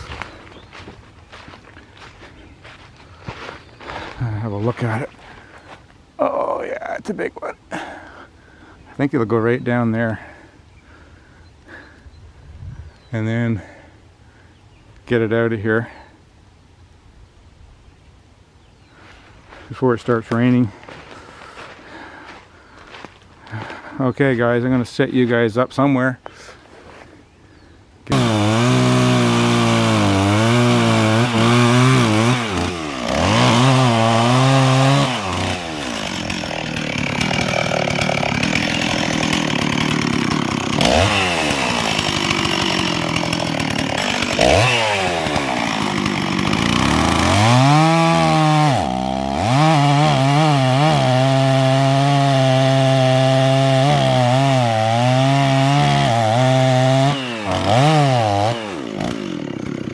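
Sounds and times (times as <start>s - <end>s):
chainsaw cutting wood: 28.1s - 59.9s.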